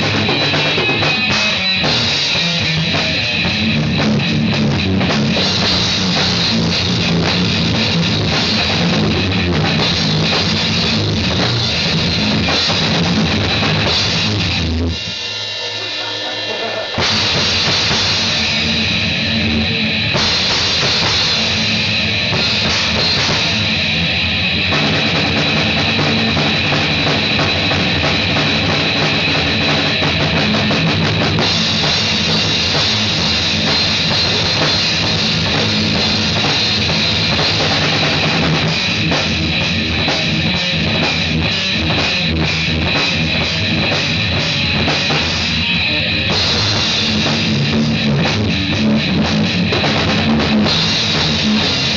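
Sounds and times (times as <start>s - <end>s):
loud rock music: 0.0s - 51.9s
pounding drum kit: 0.0s - 51.9s.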